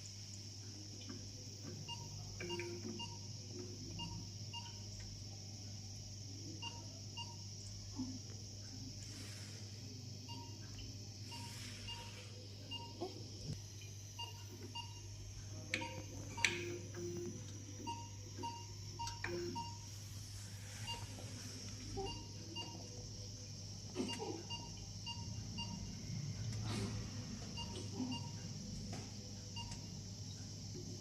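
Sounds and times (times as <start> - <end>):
steady low hum: 0.0 - 31.0
medical alarm short high beeps: 11.2 - 13.1, 20.8 - 21.2, 22.0 - 22.8.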